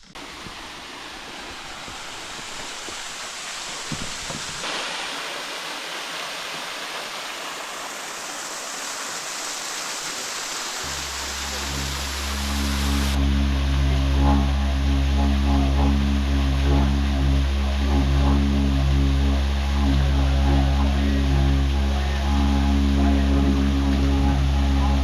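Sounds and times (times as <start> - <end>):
rush of falling water: 0.0 - 13.8
background music with low tones: 10.8 - 25.0.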